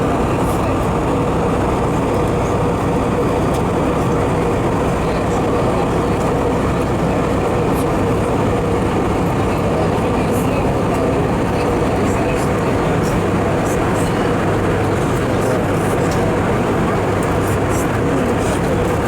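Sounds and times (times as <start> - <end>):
airplane cabin engine noise: 0.0 - 19.0.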